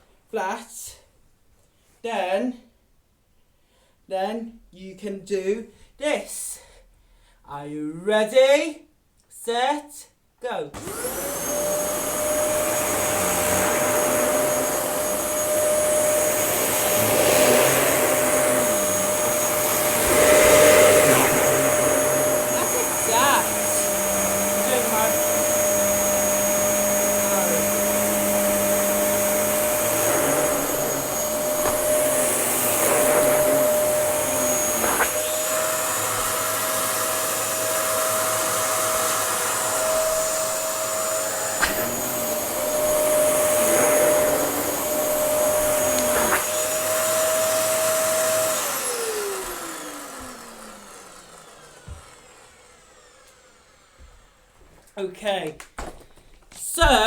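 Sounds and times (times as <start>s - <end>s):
vacuum cleaner running: 10.8s - 54.8s.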